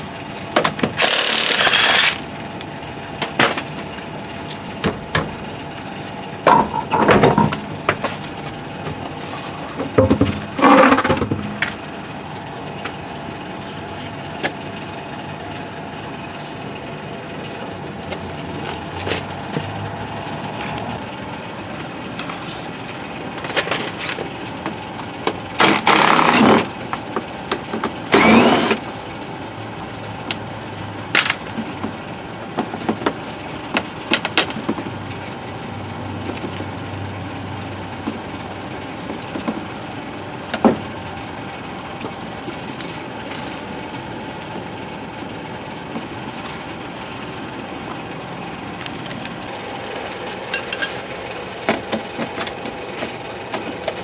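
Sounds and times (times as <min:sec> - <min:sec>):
steady background hum: 0:00.0 - 0:54.0
clicks and knocks of tools: 0:48.8 - 0:54.0.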